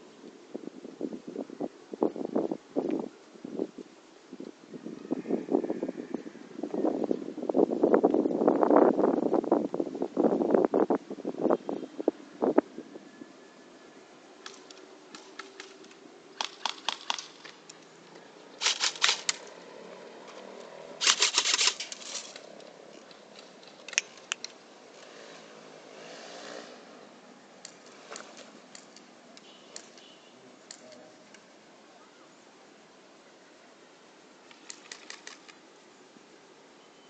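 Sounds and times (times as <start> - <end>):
airsoft guns firing: 16.4 - 17.6.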